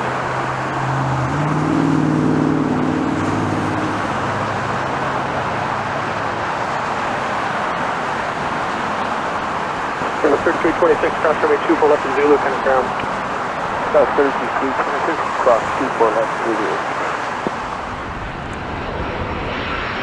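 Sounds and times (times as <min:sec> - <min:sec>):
passing vehicle engine: 0:00.0 - 0:10.1.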